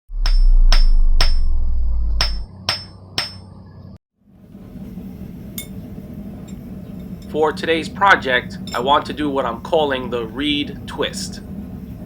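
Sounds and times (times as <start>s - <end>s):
loud low hum: 0.1s - 12.0s
hammer striking anvil: 0.2s - 1.5s, 2.2s - 3.6s, 5.6s - 5.8s, 8.6s - 9.0s.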